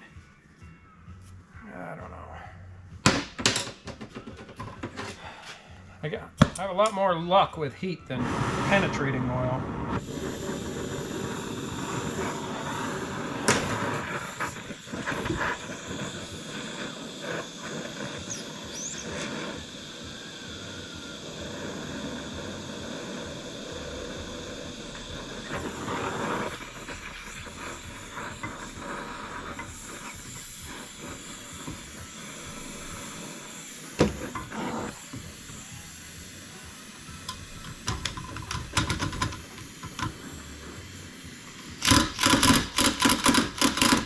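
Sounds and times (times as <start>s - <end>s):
gas torch flame hissing: 4.8s - 44.0s
sharp metal clicks: 41.8s - 44.0s.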